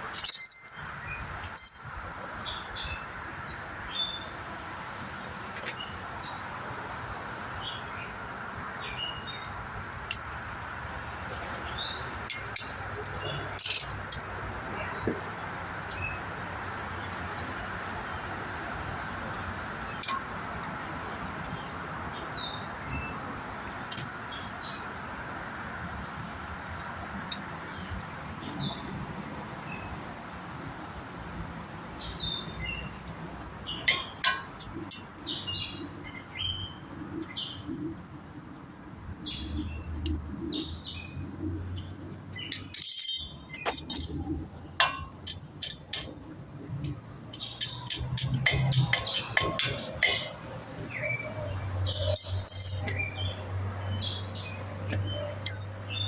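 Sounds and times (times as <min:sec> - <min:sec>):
metal tools clicking: 0:00.0 - 0:02.6, 0:12.3 - 0:14.3, 0:33.9 - 0:35.2, 0:42.5 - 0:44.2, 0:44.8 - 0:46.2, 0:47.3 - 0:51.2, 0:51.9 - 0:53.1, 0:55.4 - 0:55.8.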